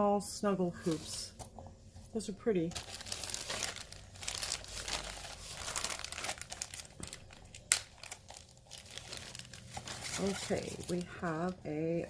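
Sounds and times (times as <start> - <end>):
packaging crinkling and rustling: 2.6 - 11.8.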